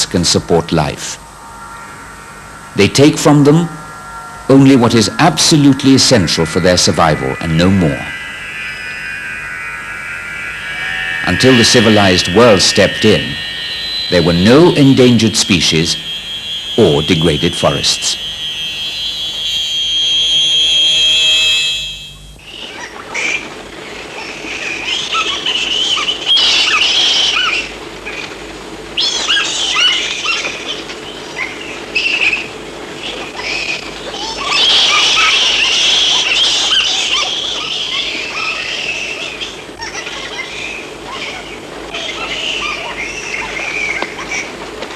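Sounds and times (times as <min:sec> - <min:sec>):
chord of steady held tones: 0:00.0 - 0:24.3
forest birds chirping: 0:00.1 - 0:20.6, 0:21.7 - 0:44.8.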